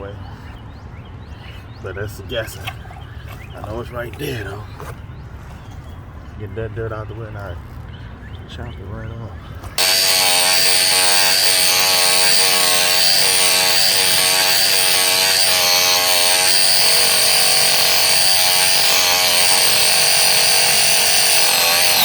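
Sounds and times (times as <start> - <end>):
power saw cutting root: 9.8 - 22.0.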